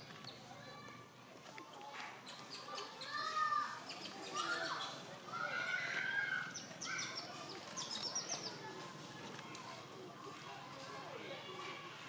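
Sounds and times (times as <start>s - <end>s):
monkeys calling: 2.2s - 8.6s.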